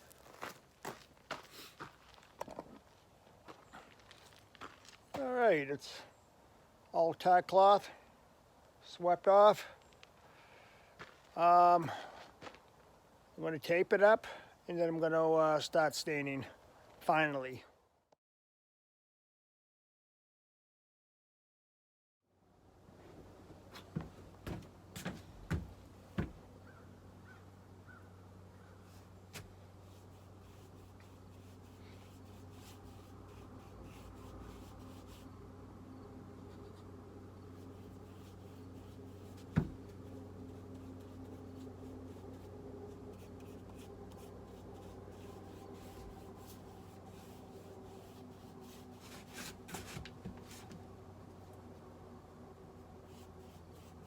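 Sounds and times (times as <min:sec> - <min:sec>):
steady low hum: 0:22.7 - 0:54.0
knock on wooden rail: 0:24.0 - 0:26.4, 0:39.6 - 0:39.8.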